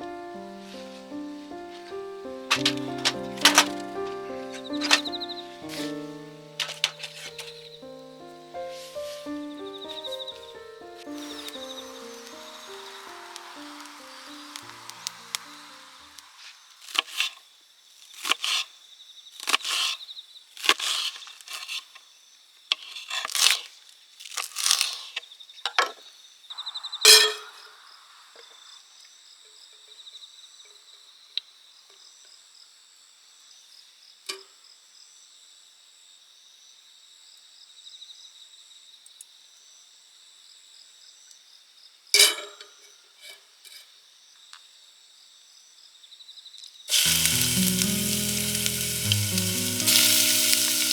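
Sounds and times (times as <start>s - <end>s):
insects chirping: 0.0s - 18.0s, 25.4s - 30.2s, 46.9s - 50.9s
short scraping or chopping strokes: 2.5s - 3.9s, 4.5s - 7.5s.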